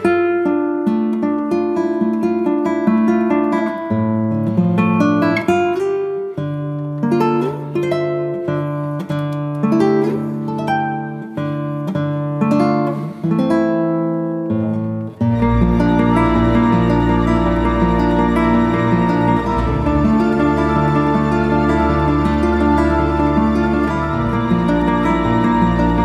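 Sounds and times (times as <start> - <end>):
acoustic guitar picking chords: 0.0 - 26.0.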